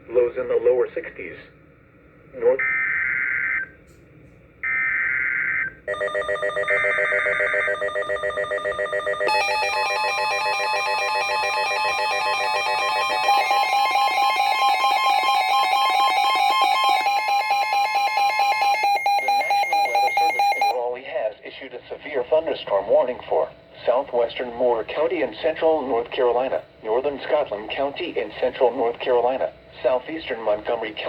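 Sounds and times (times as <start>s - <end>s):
pulsing electronic alert alarm: 4.6s - 20.8s
steady warning alarm tone: 4.6s - 20.8s.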